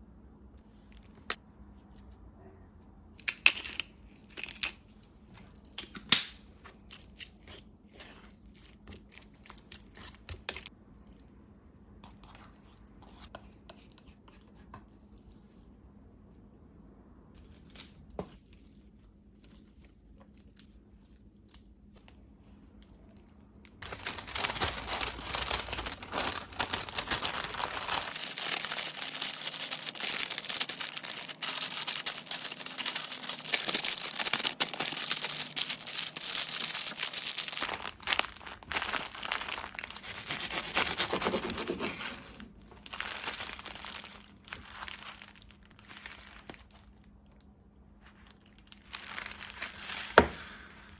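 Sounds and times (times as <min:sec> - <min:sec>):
wrapping material crinkling: 0:23.8 - 0:41.4, 0:42.8 - 0:46.8, 0:48.1 - 0:50.2.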